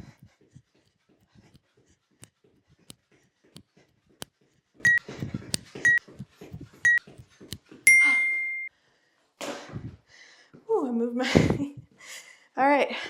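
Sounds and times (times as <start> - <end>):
longer higher timer beep: 7.9 - 8.7
timer short beeps: 7.9 - 8.7.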